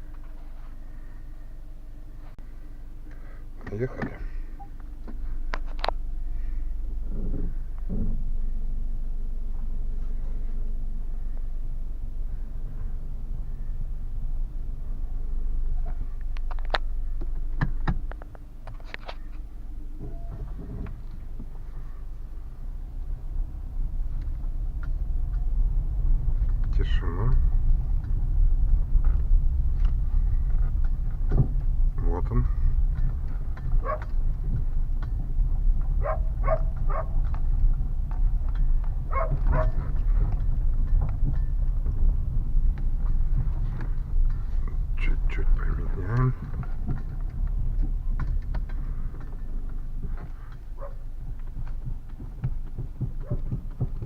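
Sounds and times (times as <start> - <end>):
road and engine rumble: 0.0 - 54.0
sharp clicks and knocks: 24.1 - 54.0.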